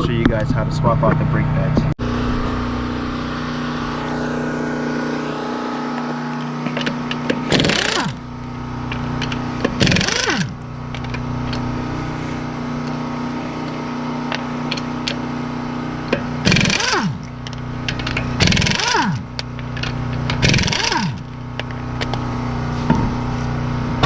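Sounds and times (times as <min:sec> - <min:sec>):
steady machine hum: 0:00.0 - 0:24.0
motor winding down: 0:02.0 - 0:22.6
impact wrench bursts: 0:04.0 - 0:22.2.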